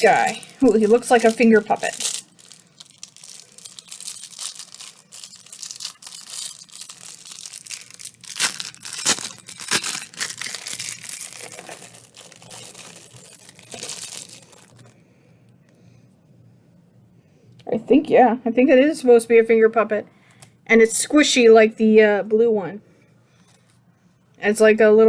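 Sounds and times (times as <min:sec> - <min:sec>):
plastic packaging crinkling and tearing: 0:00.0 - 0:15.0.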